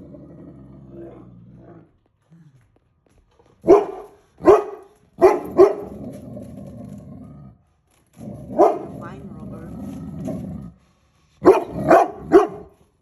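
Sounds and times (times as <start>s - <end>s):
dog barking: 3.6s - 6.0s, 8.5s - 9.2s, 11.4s - 12.8s.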